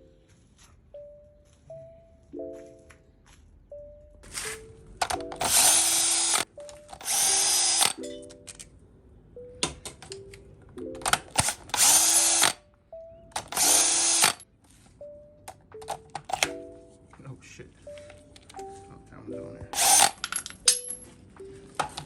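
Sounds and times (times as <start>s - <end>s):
background music: 0.0s - 22.0s
power tool bursts: 5.4s - 6.4s, 7.0s - 8.0s, 11.4s - 12.6s, 13.4s - 14.4s, 19.8s - 20.2s.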